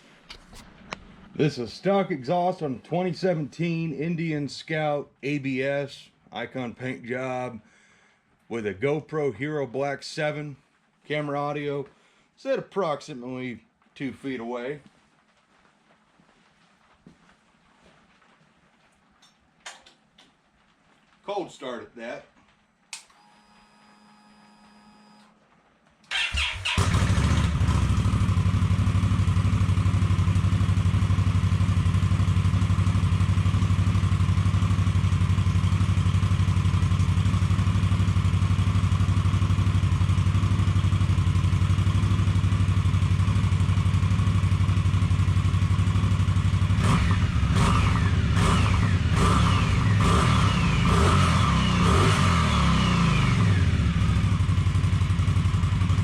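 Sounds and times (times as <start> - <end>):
motorcycle engine idling: 26.1 - 56.0
motorcycle engine revving: 26.1 - 56.0
motorcycle engine starting: 26.1 - 56.0.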